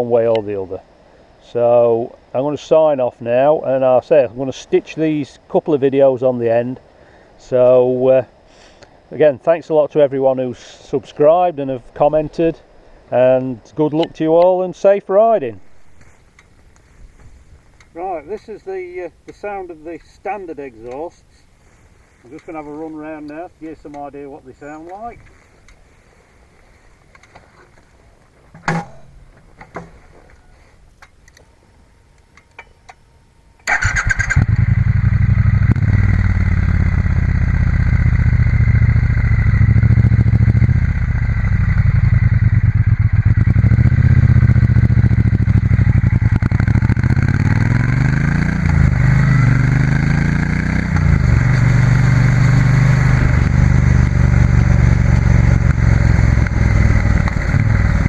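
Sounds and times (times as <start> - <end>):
motorcycle engine revving: 33.6 - 58.0.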